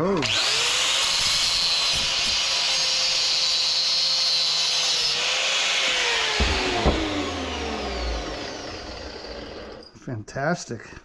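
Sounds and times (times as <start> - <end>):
power tool motor whining: 0.0 - 10.0
sharp knocks: 6.1 - 8.2.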